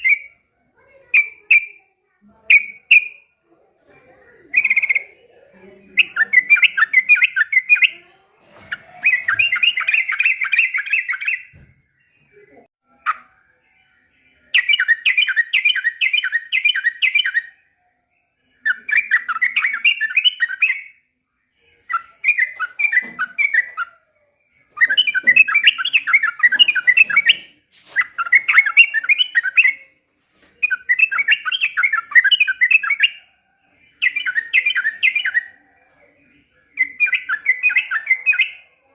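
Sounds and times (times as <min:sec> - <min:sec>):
bulbul singing chattering notes: 0:04.5 - 0:08.0, 0:08.7 - 0:13.3, 0:34.0 - 0:35.6.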